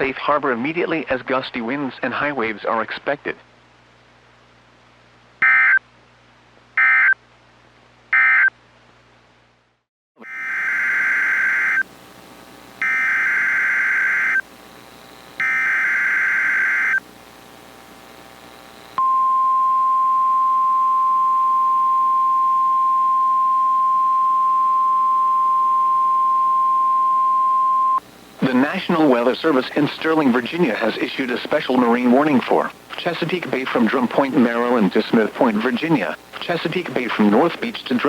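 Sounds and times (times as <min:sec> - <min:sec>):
shrill data bursts: 0:10.2 - 0:11.9, 0:12.8 - 0:14.4, 0:15.4 - 0:17.0.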